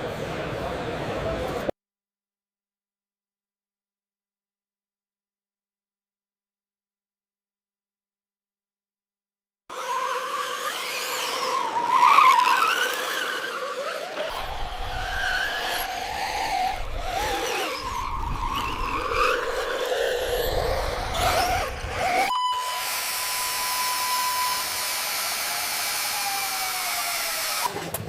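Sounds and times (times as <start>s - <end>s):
whining model vehicle motors: 9.7s - 28.0s.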